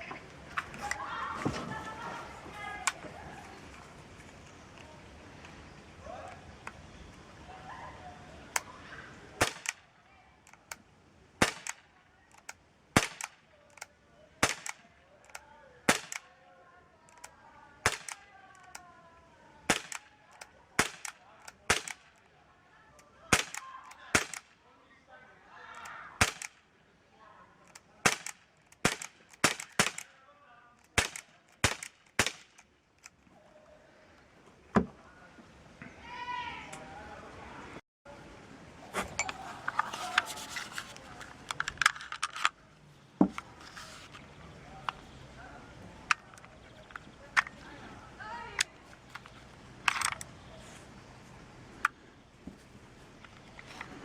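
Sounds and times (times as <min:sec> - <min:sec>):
air pistol sharp cracks: 0:09.4 - 0:09.9, 0:11.4 - 0:16.4, 0:17.2 - 0:18.8, 0:19.7 - 0:22.2, 0:23.2 - 0:24.6, 0:25.8 - 0:26.6, 0:27.7 - 0:30.2, 0:30.8 - 0:32.7.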